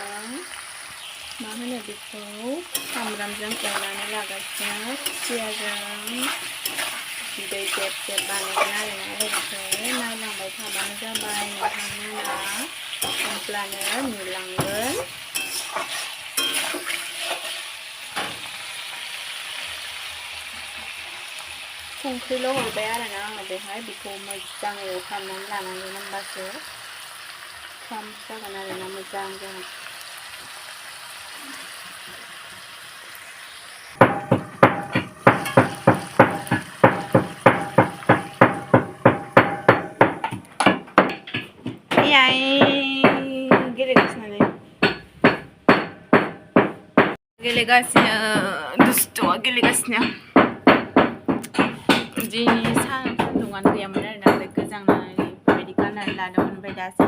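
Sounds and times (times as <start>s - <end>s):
food sizzling in a pan: 0.0s - 40.4s
utensil scraping a pan: 2.7s - 17.8s.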